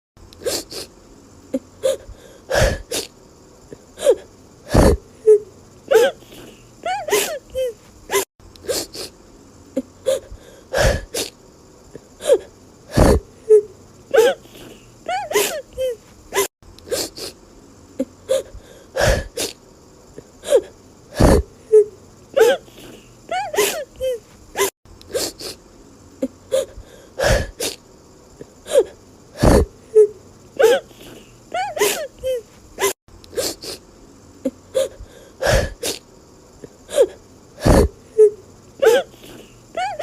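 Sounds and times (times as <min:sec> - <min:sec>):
sharp gasping breaths: 0:01.6 - 0:03.1, 0:10.1 - 0:13.6, 0:18.3 - 0:19.6, 0:26.2 - 0:27.8, 0:34.8 - 0:36.0.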